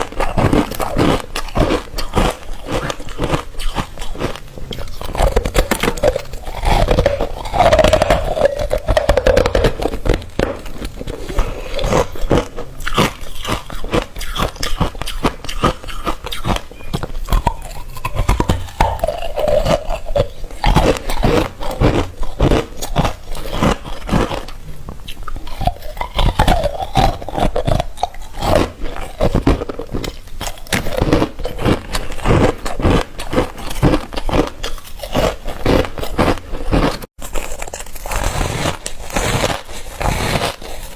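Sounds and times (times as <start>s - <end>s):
ice being crunched: 37.2s - 40.9s.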